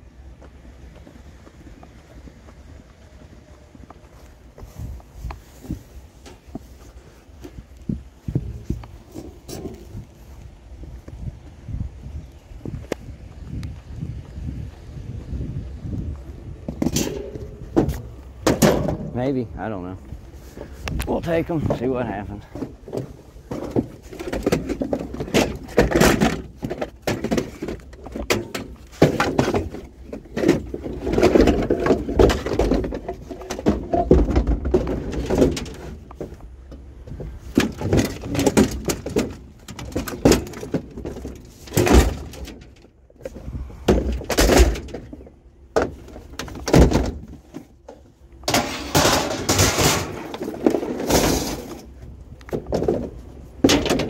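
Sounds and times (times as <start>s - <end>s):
furniture clattering and scraping: 48.5s - 51.9s.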